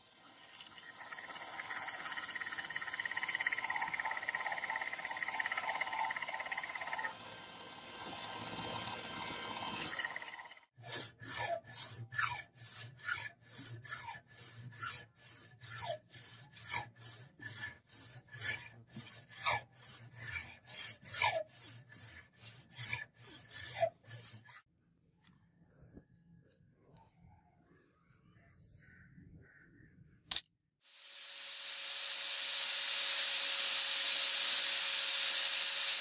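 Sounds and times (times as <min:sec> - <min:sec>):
rasping strokes on metal: 0:00.0 - 0:07.2, 0:08.0 - 0:24.7.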